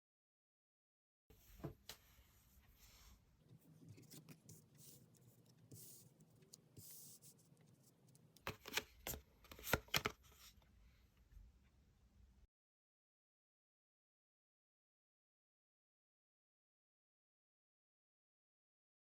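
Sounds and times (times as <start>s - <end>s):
cards sliding and rustling: 3.9s - 10.6s.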